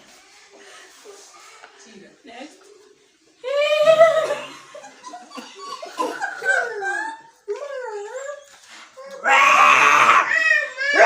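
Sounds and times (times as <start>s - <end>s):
people laughing: 3.4s - 7.5s
people making silly sounds: 9.0s - 11.0s.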